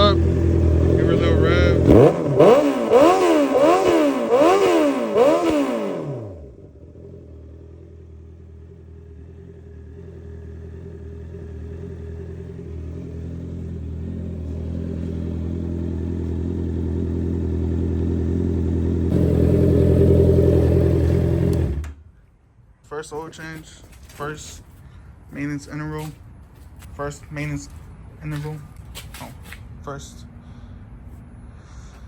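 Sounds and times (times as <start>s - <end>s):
motorcycle engine revving and idling: 0.0s - 22.0s.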